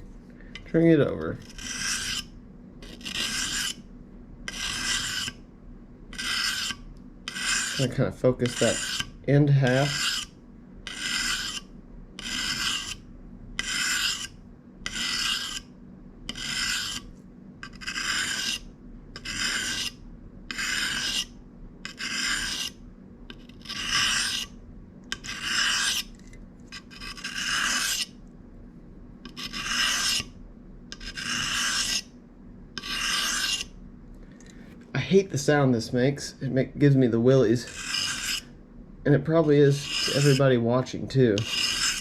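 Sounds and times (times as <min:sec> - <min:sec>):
knife scraping sharpening stone: 0:01.4 - 0:03.8, 0:04.5 - 0:05.4, 0:06.1 - 0:09.1, 0:09.7 - 0:10.3, 0:10.9 - 0:13.0, 0:13.6 - 0:15.7, 0:16.3 - 0:18.6, 0:19.2 - 0:24.5, 0:25.1 - 0:28.1, 0:29.3 - 0:30.3, 0:30.9 - 0:32.1, 0:32.8 - 0:33.7, 0:37.6 - 0:38.5, 0:39.8 - 0:40.5, 0:41.4 - 0:42.0.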